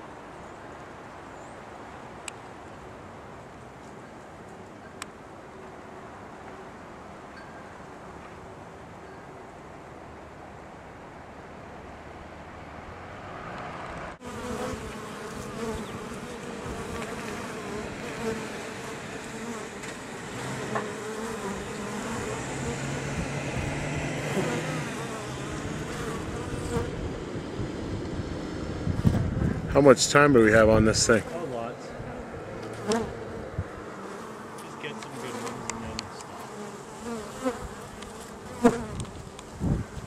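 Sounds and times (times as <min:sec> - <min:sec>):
bees buzzing: 0:14.2 - 0:27.2, 0:31.0 - 0:40.0.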